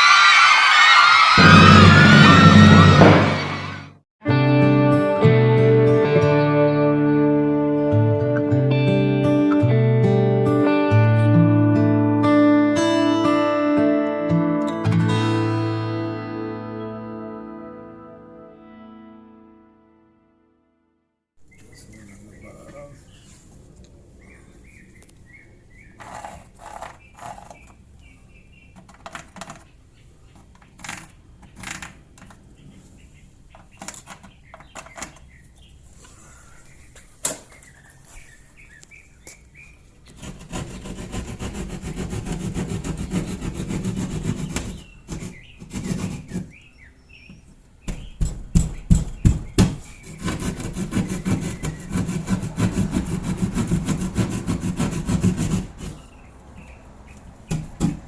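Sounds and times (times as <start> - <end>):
saw cutting through wall: 1.4 - 3.9, 40.1 - 46.7, 49.6 - 56.2.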